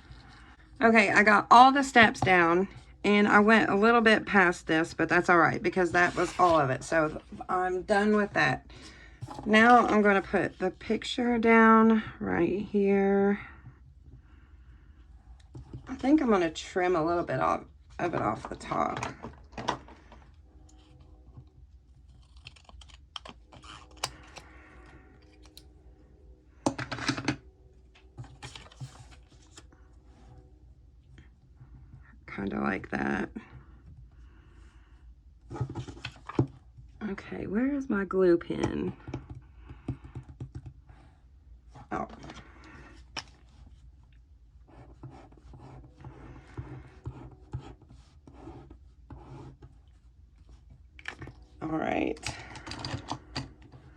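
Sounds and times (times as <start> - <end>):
paper clicks and rustles: 28.1 - 29.6.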